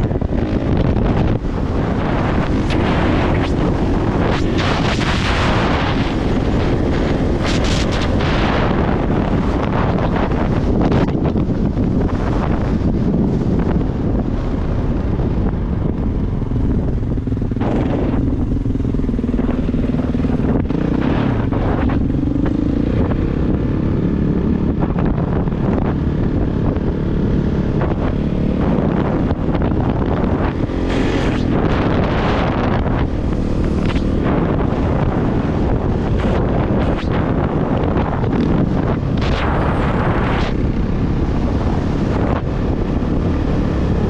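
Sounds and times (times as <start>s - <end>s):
wind buffeting on microphone: 0.0s - 44.0s
dirt bike engine revving: 17.3s - 42.4s.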